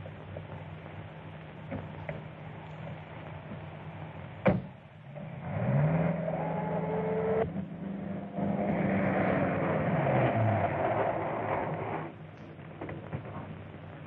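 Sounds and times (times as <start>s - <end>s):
film soundtrack hiss: 0.0s - 14.0s
vehicle engine speeding up: 5.2s - 12.2s.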